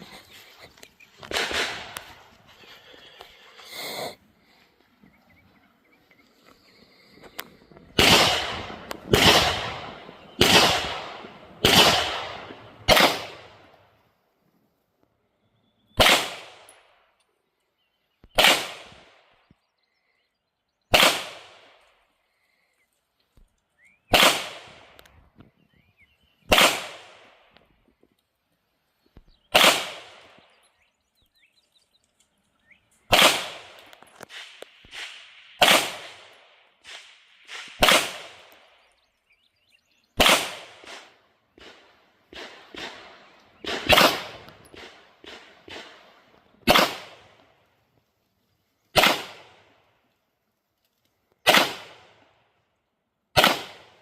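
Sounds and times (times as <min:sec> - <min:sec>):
pistol shots: 0:01.2 - 0:02.2, 0:07.9 - 0:13.7, 0:15.9 - 0:16.8, 0:18.3 - 0:19.2, 0:20.9 - 0:21.8, 0:24.1 - 0:25.0, 0:26.5 - 0:27.5, 0:29.5 - 0:30.4, 0:33.1 - 0:38.7, 0:40.2 - 0:47.5, 0:48.9 - 0:49.8, 0:51.4 - 0:52.2, 0:53.3 - 0:54.0
fainter gunshot cracks: 0:40.2 - 0:45.9.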